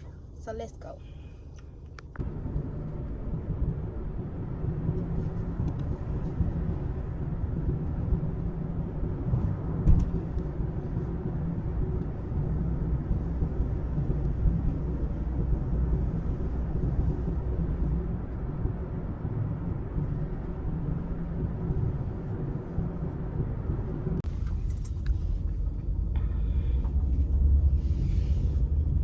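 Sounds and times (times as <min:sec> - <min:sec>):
car engine and tyre rumble: 0:00.0 - 0:29.0.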